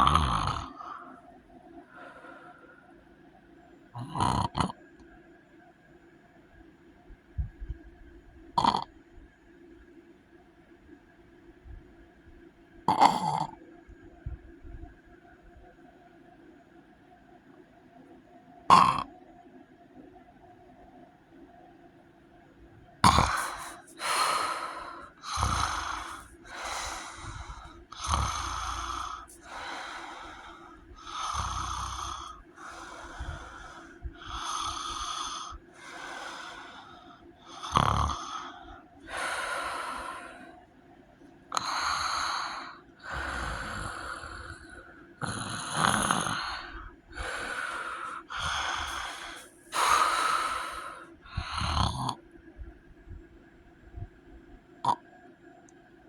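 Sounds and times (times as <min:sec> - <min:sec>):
heavy wheezy snoring: 0:00.0 - 0:01.2, 0:04.0 - 0:04.8, 0:08.6 - 0:08.9, 0:12.9 - 0:13.6, 0:18.7 - 0:19.1, 0:23.0 - 0:40.4, 0:41.5 - 0:52.2.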